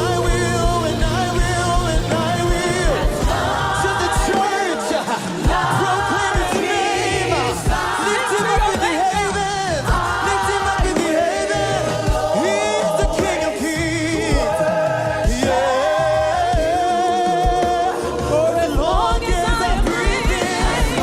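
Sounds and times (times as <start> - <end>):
band with steady beat: 0.0 - 21.0
gospel singers and choir: 0.0 - 21.0.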